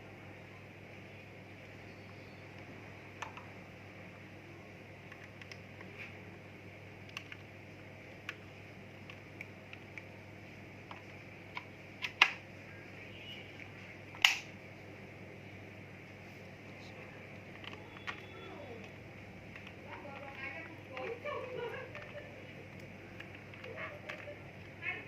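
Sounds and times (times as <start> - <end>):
steady low hum: 0.0 - 25.0
light clicks and taps: 17.5 - 24.8.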